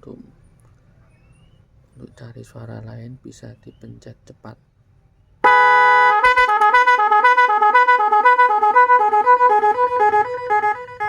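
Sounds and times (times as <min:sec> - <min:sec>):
multi-tone horn: 0:05.4 - 0:11.0.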